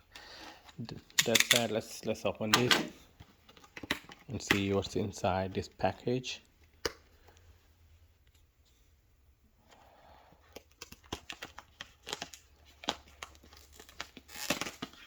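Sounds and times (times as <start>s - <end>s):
package being torn open: 10.6s - 15.0s.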